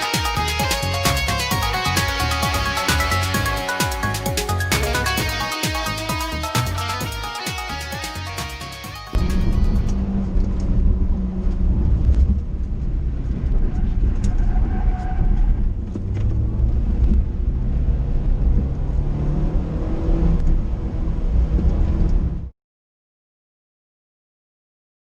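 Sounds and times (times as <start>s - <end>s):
car engine running: 0.0s - 13.5s
low road rumble: 0.0s - 22.5s.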